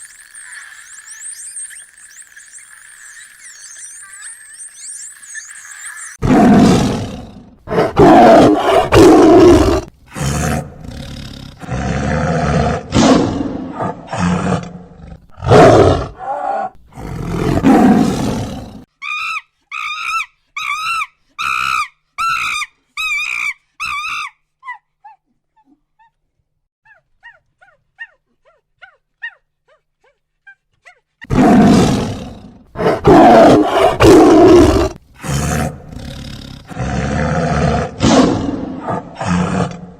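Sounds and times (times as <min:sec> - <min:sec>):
faint chirps: 0:00.0 - 0:06.2
high warbling animal calls: 0:00.0 - 0:07.3, 0:32.9 - 0:35.0.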